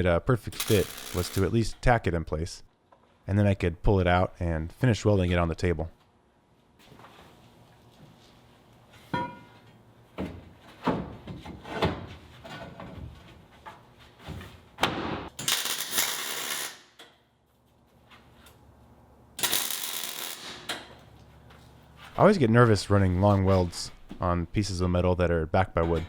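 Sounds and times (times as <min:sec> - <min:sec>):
arc welding crackling hiss: 0:00.6 - 0:01.5, 0:15.4 - 0:16.9, 0:19.4 - 0:20.7.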